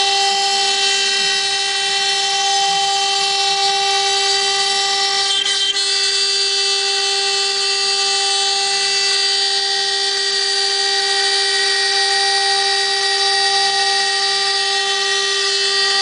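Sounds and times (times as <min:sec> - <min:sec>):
router spindle high whine: 0:00.0 - 0:16.0.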